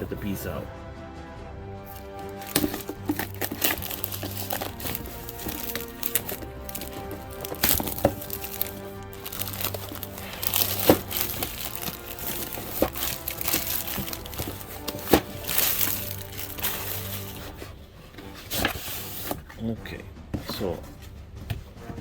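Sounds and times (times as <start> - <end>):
background music sustained notes: 0.0 - 22.0
packaging crinkling: 1.9 - 17.6.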